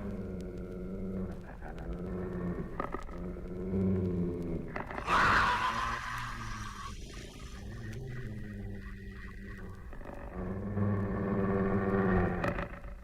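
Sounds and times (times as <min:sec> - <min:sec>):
loud hissing burst: 0:05.0 - 0:08.2.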